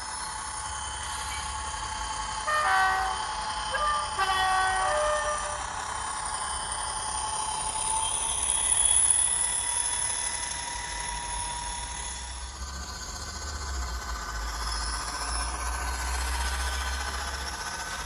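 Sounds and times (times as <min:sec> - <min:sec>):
diesel locomotive engine hum: 0:00.0 - 0:18.0
high engine whine: 0:00.1 - 0:08.7.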